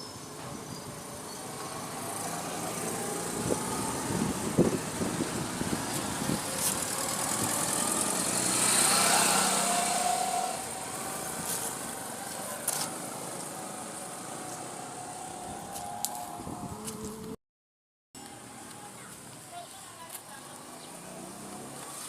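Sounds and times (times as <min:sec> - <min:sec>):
vehicle passing: 0:01.5 - 0:17.4, 0:20.6 - 0:22.0.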